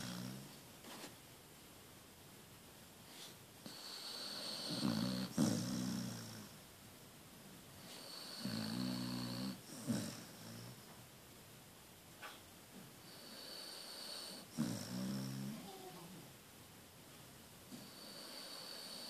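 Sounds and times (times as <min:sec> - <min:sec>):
dog snoring: 0:00.0 - 0:00.6, 0:03.6 - 0:06.6, 0:07.8 - 0:10.9, 0:13.0 - 0:15.7, 0:17.7 - 0:19.0
dog snorting: 0:03.1 - 0:06.5, 0:07.9 - 0:10.8, 0:13.2 - 0:15.6.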